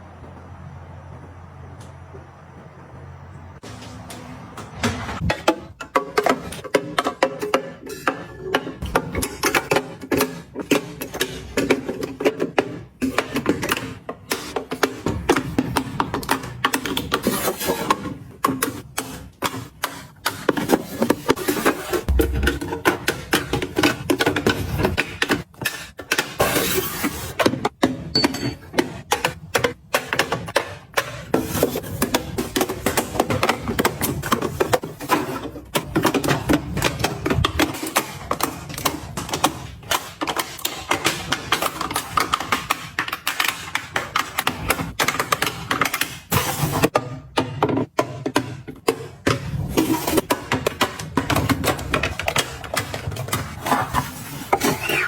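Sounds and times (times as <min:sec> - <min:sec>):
hard items clicking and tapping: 0:05.2 - 0:26.4, 0:27.4 - 0:55.0
dull low thump: 0:22.1 - 0:22.8
containers and packaging clicking: 0:29.1 - 0:46.8.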